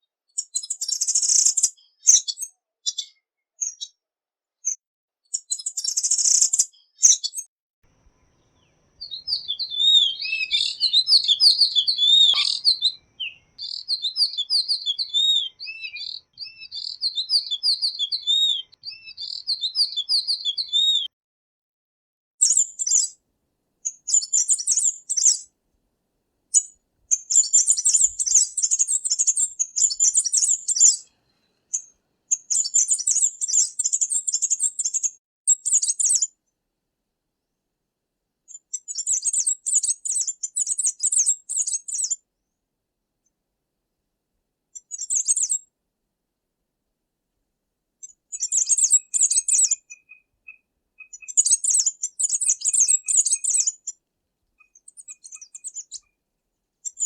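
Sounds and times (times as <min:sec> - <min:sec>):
bird warbling song: 0:04.6 - 0:07.4, 0:08.2 - 0:21.1, 0:22.4 - 0:23.2, 0:23.8 - 0:25.5, 0:26.5 - 0:36.3, 0:48.0 - 0:54.0, 0:54.6 - 0:56.2
high-pitched bird song bursts: 0:09.0 - 0:21.1, 0:26.6 - 0:31.0, 0:48.4 - 0:53.7.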